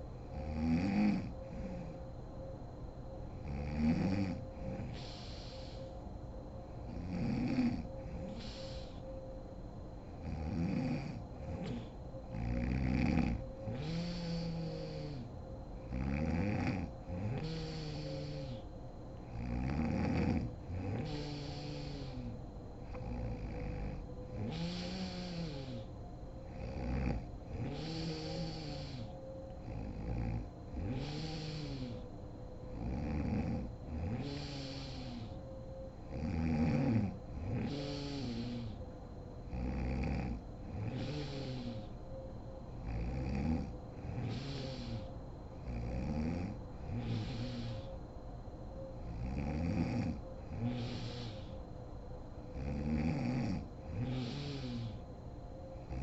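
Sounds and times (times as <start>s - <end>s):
woman snoring: 0.0s - 2.0s, 3.4s - 5.9s, 6.9s - 9.0s, 10.2s - 32.1s, 32.7s - 35.4s, 36.0s - 38.8s, 39.5s - 42.0s, 42.8s - 48.0s, 49.0s - 51.6s, 52.6s - 55.0s
hissing breath: 4.6s - 6.1s, 7.3s - 9.1s, 13.6s - 15.3s, 17.2s - 18.7s, 20.8s - 25.9s, 27.6s - 29.8s, 30.8s - 32.1s, 34.0s - 35.5s, 37.5s - 38.9s, 40.8s - 42.0s, 44.0s - 45.2s, 46.8s - 48.0s, 50.5s - 51.7s, 54.0s - 55.1s.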